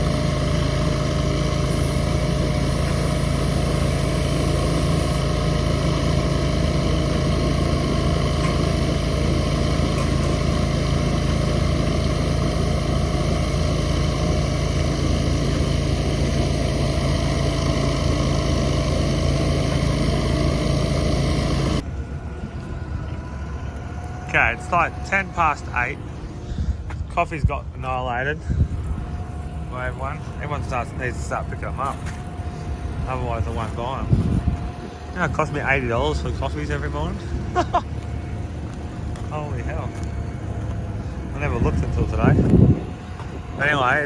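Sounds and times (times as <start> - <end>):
mixer drum turning: 0.0 - 21.9
diesel truck engine running: 0.0 - 44.0.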